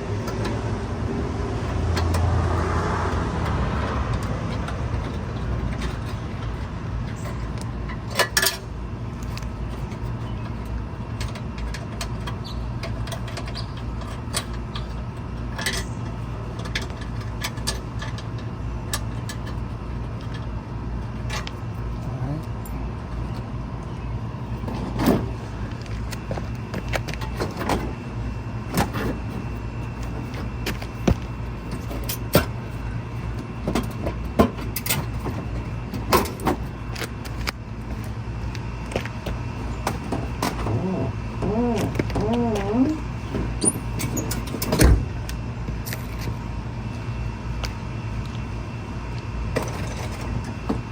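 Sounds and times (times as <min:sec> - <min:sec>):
metallic clicks and clanks of tools: 0:03.4 - 0:20.4.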